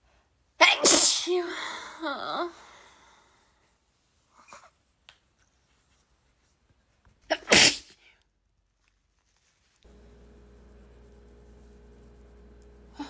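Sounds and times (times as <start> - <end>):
girl sneezing: 0.6 - 2.7, 7.3 - 8.0
faint breath: 1.5 - 3.8.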